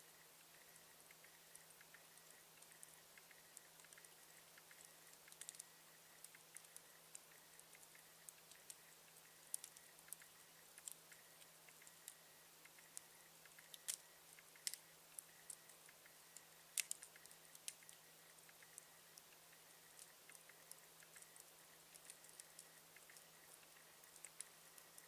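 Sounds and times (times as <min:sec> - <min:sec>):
campfire crackling and popping: 0:11.7 - 0:14.8, 0:16.7 - 0:18.7.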